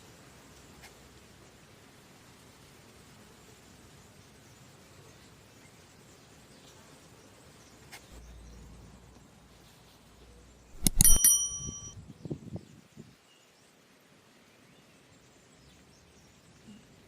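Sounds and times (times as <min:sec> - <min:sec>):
faint background hiss: 0:00.0 - 0:11.2
small metallic bell ringing: 0:10.8 - 0:12.0.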